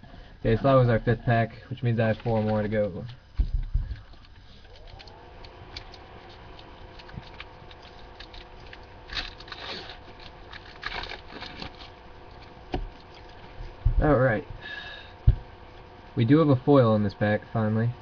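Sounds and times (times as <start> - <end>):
cards rustling: 2.0 - 12.6
wrapper tearing and crinkling: 6.4 - 12.5.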